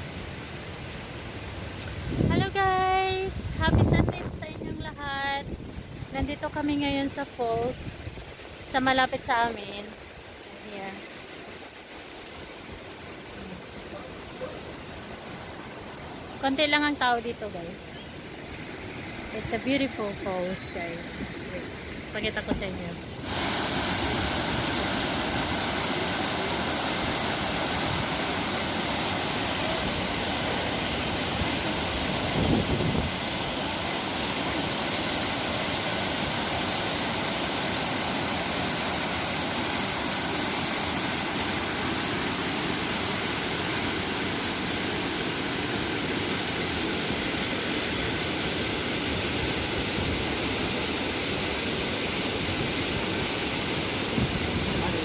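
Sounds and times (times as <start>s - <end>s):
waterfall pouring: 23.2s - 48.5s.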